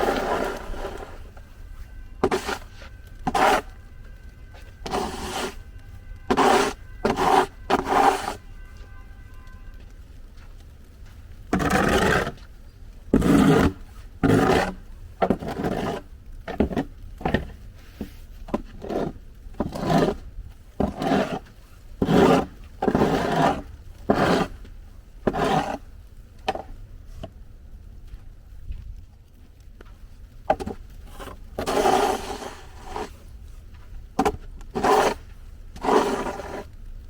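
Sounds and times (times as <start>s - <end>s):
rough scraping strokes: 0.0s - 5.7s, 6.3s - 8.5s, 13.2s - 16.9s, 17.8s - 20.2s, 20.8s - 24.6s, 25.2s - 25.8s, 30.5s - 33.3s, 34.2s - 36.8s.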